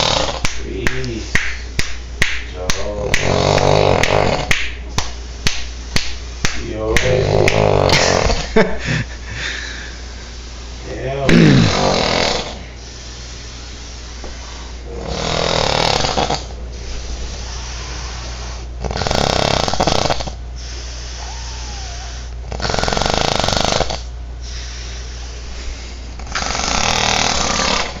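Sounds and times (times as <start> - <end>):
man snoring loudly: 0.0 - 0.5, 2.9 - 4.5, 7.0 - 8.5, 11.3 - 12.6, 14.9 - 16.6, 18.8 - 20.4, 21.2 - 24.1, 26.2 - 28.0.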